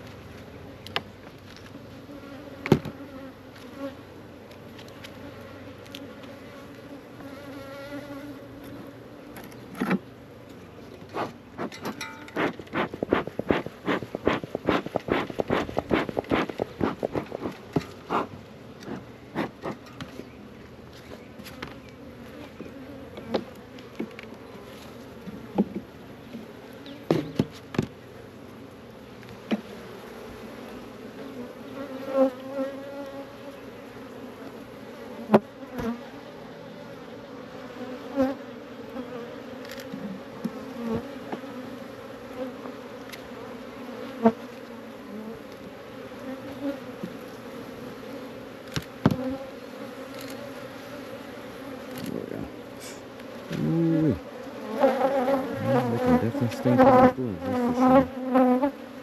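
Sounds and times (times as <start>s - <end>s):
bees buzzing: 1.8s - 10.4s, 11.1s - 19.9s, 21.4s - 59.0s
hive boxes clicking and knocking: 11.0s - 20.2s, 48.7s - 50.5s.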